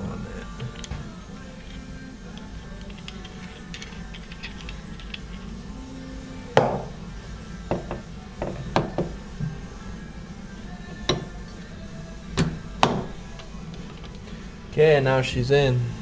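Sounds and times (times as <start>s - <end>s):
metal engine parts clinking: 1.6s - 5.5s.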